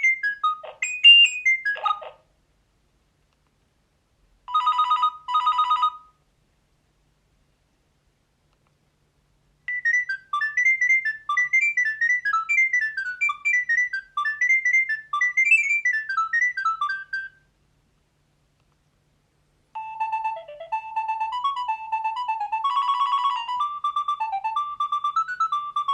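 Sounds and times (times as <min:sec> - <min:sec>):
different ringtone: 0:00.0 - 0:02.2, 0:04.5 - 0:06.1, 0:09.7 - 0:17.4, 0:19.8 - 0:25.9
mobile phone ringtone melody: 0:00.0 - 0:02.2, 0:04.5 - 0:06.1, 0:09.7 - 0:17.4, 0:19.8 - 0:25.9.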